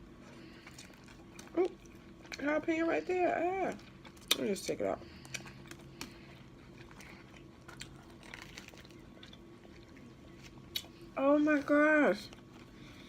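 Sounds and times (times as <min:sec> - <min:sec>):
person chewing: 0:00.0 - 0:02.5, 0:03.7 - 0:11.2.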